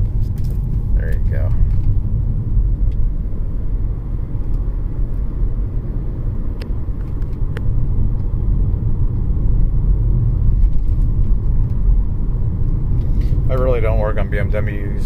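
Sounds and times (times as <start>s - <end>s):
engine and road noise in car: 0.0s - 15.0s.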